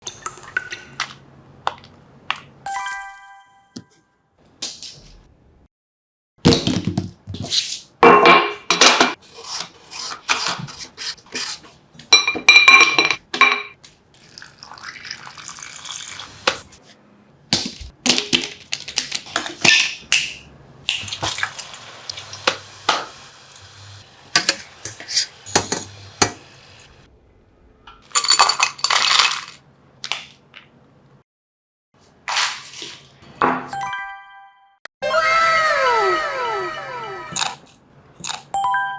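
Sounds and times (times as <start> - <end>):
utensils clinking on dishes: 12.1 - 13.8, 24.4 - 26.6, 28.0 - 29.6.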